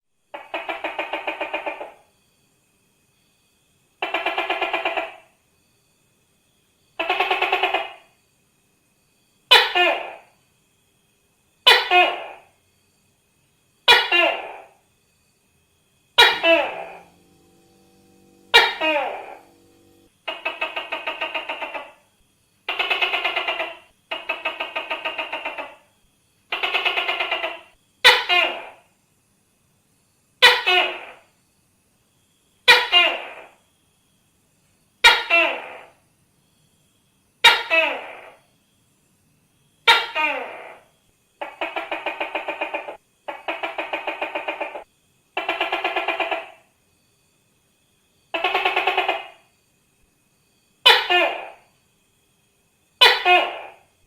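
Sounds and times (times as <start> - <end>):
gecko calling rattling pulses: 0.3 - 2.1, 4.0 - 5.4, 7.0 - 8.2, 16.1 - 28.8, 39.8 - 46.7, 48.3 - 49.5.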